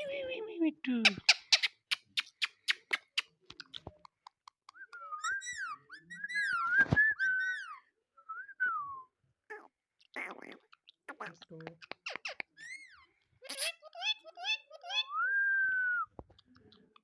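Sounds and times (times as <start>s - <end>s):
parrot whistling a tune: 4.8s - 8.8s, 14.9s - 16.1s.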